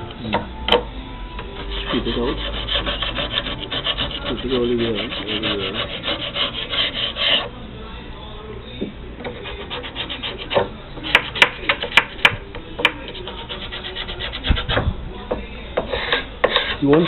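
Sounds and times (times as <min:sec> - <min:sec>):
hand scraper scraping wood: 0:01.7 - 0:07.5, 0:15.9 - 0:17.0.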